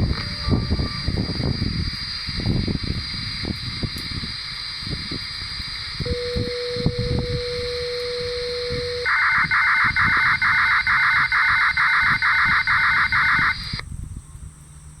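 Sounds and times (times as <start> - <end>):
electronic tone bursts: 0.0 - 2.0, 6.0 - 13.8
steady electronic tone: 0.0 - 2.3, 6.0 - 13.8.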